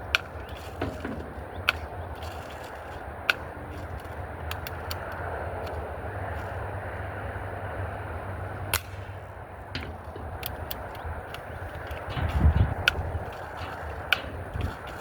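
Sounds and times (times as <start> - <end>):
steady background rumble: 0.0 - 15.0
light clicks of rifle handling: 0.1 - 6.6, 9.8 - 15.0
sharp snap: 8.7 - 10.8.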